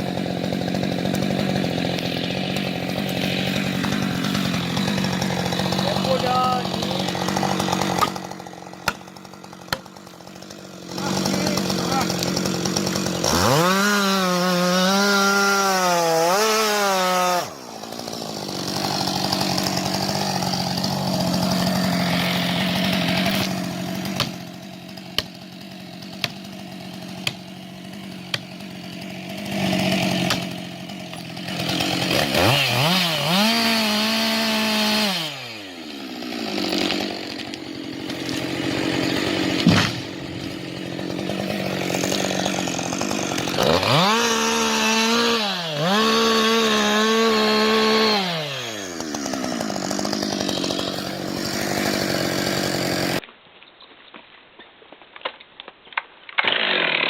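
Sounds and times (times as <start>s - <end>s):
chainsaw cutting tree: 0.0s - 53.2s, 56.3s - 57.0s
wood snapping: 0.5s - 10.5s, 12.1s - 13.8s, 17.5s - 33.0s, 36.6s - 46.4s, 53.1s - 57.0s.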